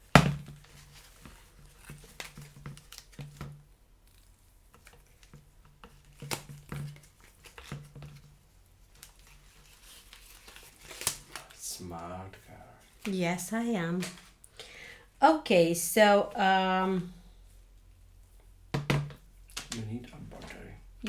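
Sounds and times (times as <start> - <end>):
packaging crinkling: 0.5 - 3.4, 6.0 - 11.6.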